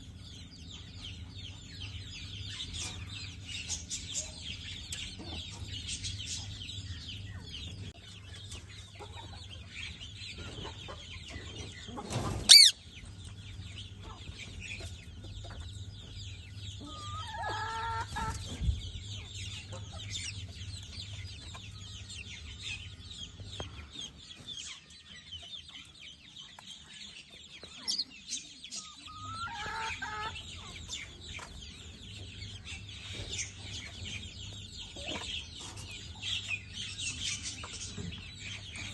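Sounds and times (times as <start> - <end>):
birds chirping: 0.0 - 38.9
steady low hum: 0.0 - 38.9
bird clucking calls: 8.9 - 12.8, 16.8 - 38.9
bird shrill screech: 12.5 - 12.8.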